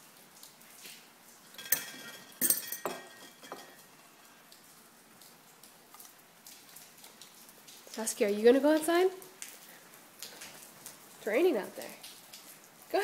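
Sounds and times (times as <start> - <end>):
metal clinks and rattles: 1.4 - 3.9.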